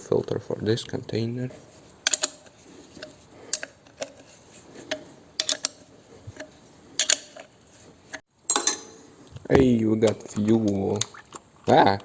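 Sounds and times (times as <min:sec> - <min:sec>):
hard parts clicking and tapping: 0:02.0 - 0:09.0.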